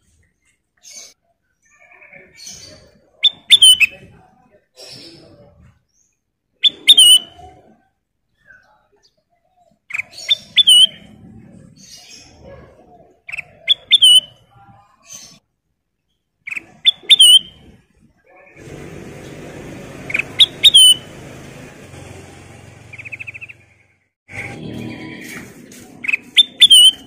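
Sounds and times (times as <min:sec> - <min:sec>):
bulbul singing whistled notes: 0:16.9 - 0:17.6, 0:20.1 - 0:21.1, 0:26.1 - 0:27.0.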